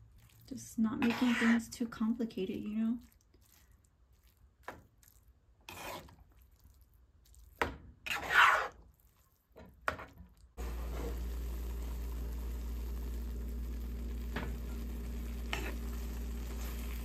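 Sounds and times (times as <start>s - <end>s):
utensils scraping a dish: 1.0s - 1.6s, 5.7s - 6.1s, 8.1s - 8.8s, 15.4s - 15.8s
steady hiss with low hum: 10.6s - 17.0s.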